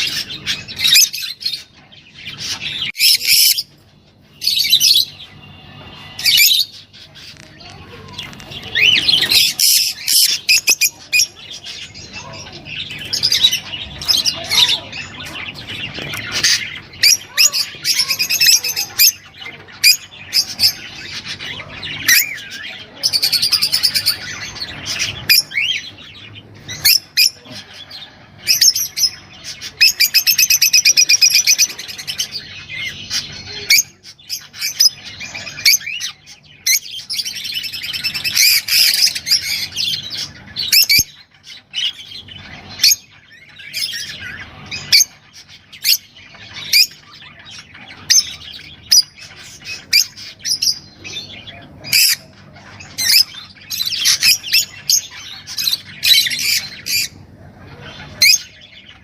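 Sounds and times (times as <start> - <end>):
cage birds chirping and trilling: 0.0 - 59.0
bird squawk: 4.4 - 59.0.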